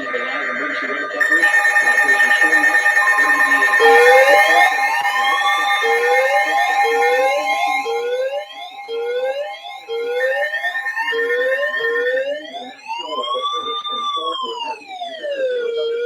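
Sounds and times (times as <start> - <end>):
steady high tones: 0.0 - 12.8
siren whooping and wailing: 1.2 - 16.0.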